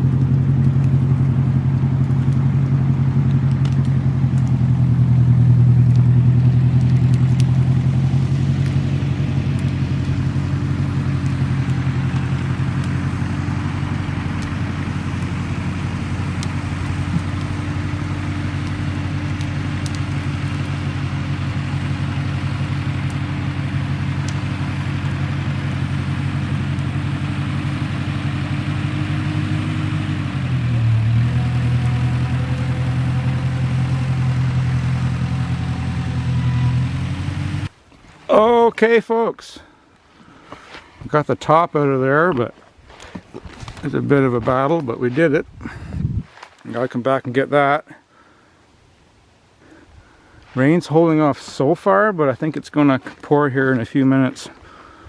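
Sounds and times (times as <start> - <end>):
tractor engine running under load: 0.0 - 38.8.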